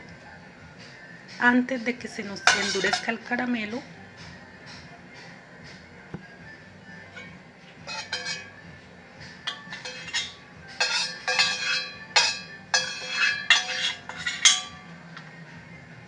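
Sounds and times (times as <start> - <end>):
metal kitchenware scraping a pot: 2.4 - 3.2, 7.1 - 8.6, 9.4 - 14.9.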